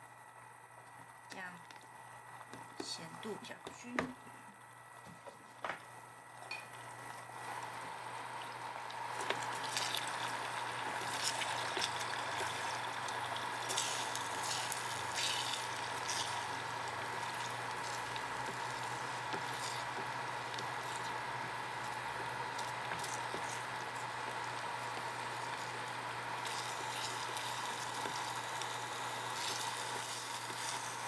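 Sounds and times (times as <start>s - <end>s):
eggs sizzling in a frying pan: 6.2s - 31.0s.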